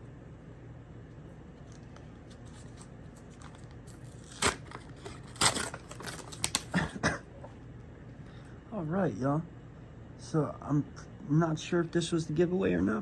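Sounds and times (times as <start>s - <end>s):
package rustling: 1.7s - 6.9s
package tearing: 1.7s - 7.0s.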